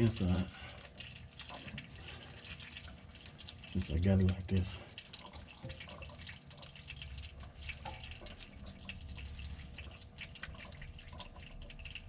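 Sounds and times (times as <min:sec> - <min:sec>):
fluid dripping: 0:00.0 - 0:12.0.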